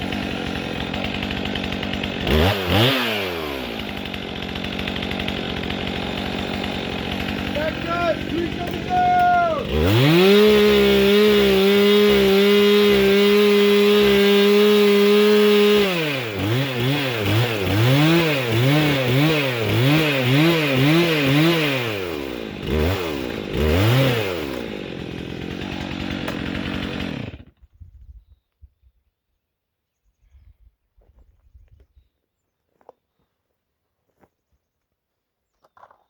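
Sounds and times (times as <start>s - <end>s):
chainsaw revving: 0.0s - 27.6s.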